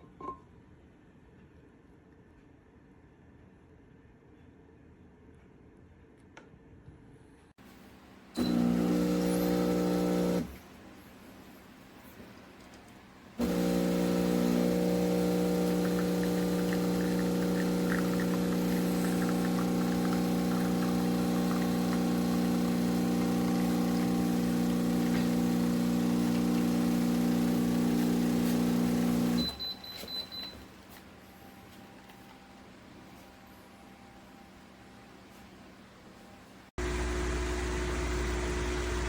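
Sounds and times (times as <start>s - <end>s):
espresso machine pump humming: 8.4s - 10.6s, 13.4s - 29.6s, 36.8s - 39.0s.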